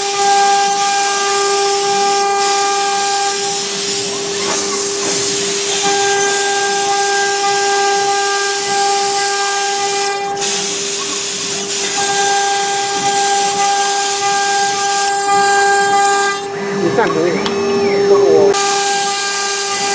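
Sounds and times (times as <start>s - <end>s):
router spindle whine: 0.0s - 19.9s
hiss of cutting: 0.6s - 19.9s
higher whine: 16.5s - 18.6s.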